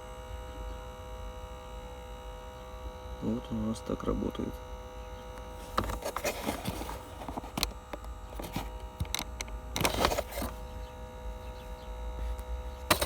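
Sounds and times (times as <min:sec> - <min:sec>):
small fan motor humming: 0:00.0 - 0:13.0
handling clicks and rustles: 0:05.4 - 0:10.7, 0:12.2 - 0:13.0.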